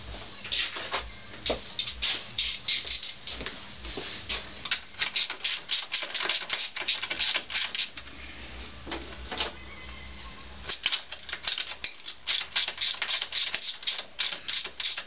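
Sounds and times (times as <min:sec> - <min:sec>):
hand tools clicking and rattling: 0:10.8 - 0:15.0.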